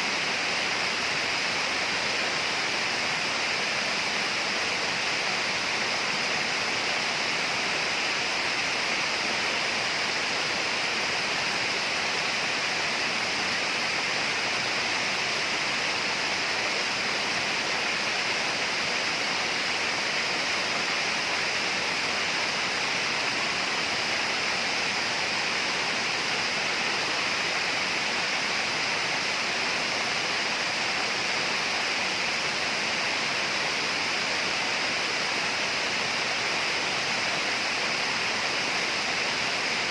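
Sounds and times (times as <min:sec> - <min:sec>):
rainforest ambience hiss: 0:00.0 - 0:39.9.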